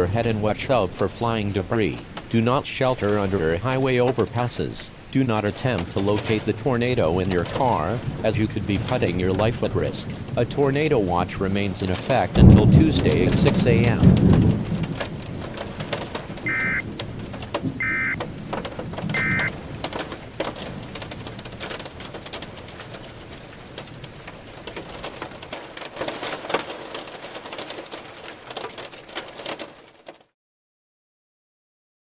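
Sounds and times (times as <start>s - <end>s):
steady rain: 0.0s - 30.3s
thunder crackles: 5.4s - 29.7s
warbling data bursts: 16.4s - 16.9s, 17.7s - 18.2s, 19.0s - 19.6s.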